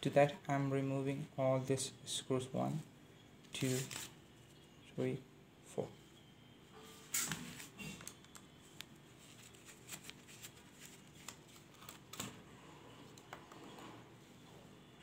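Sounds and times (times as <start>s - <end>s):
small clicks and handling noises: 7.8s - 12.4s.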